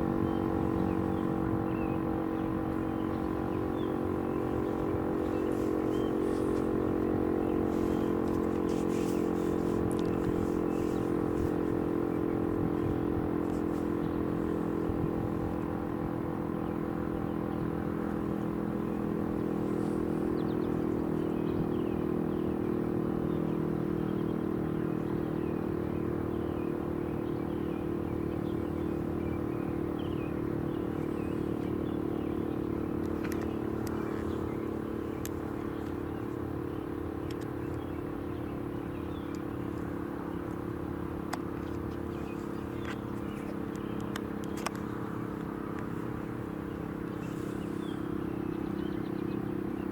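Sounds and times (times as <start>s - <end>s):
outdoor warning siren: 0.0s - 21.7s.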